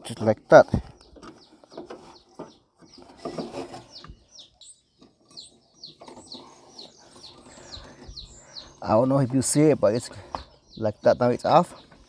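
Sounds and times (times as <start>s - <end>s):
small bird chirping: 0.1s - 12.0s.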